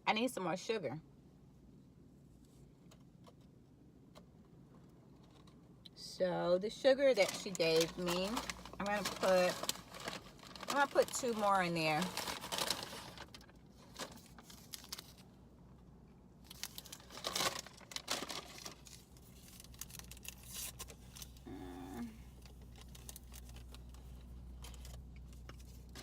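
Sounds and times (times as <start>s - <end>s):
sugar packets tearing and crinkling: 7.1s - 15.3s, 16.4s - 26.0s.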